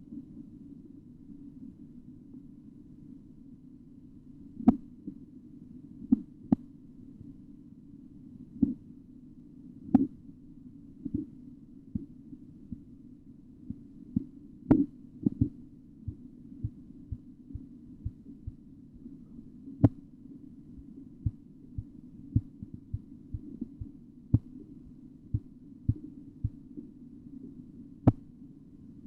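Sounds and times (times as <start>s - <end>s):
steady low hum: 0.0s - 29.0s
heartbeat thumps through stethoscope: 13.7s - 19.1s, 20.8s - 24.6s, 25.3s - 26.6s, 28.0s - 28.2s.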